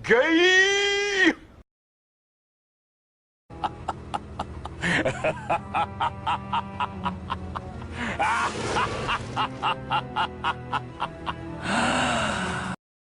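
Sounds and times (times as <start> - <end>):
person laughing evilly: 3.5 - 12.1
low background music: 3.5 - 12.8.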